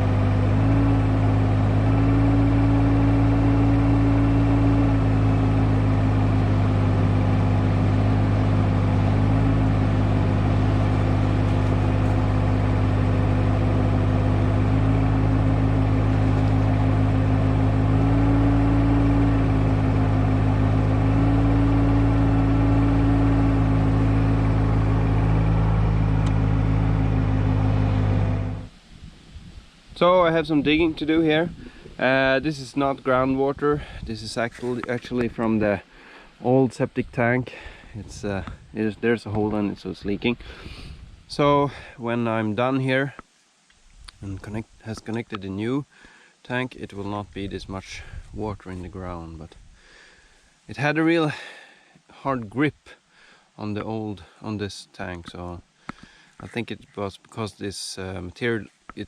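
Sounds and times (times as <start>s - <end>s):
excavator diesel engine running: 0.0s - 28.7s.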